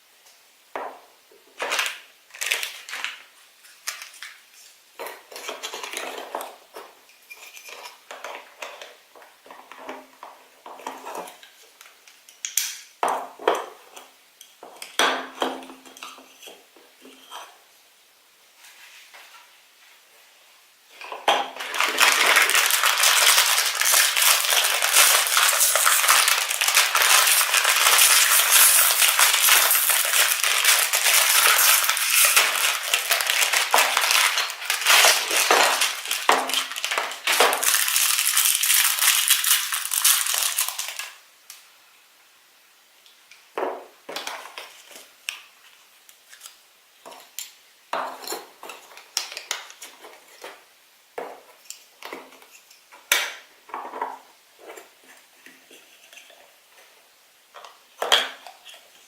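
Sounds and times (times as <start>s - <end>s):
plastic packaging crinkling and tearing: 1.6s - 6.8s, 21.0s - 41.2s
small items clicking: 21.6s - 41.2s.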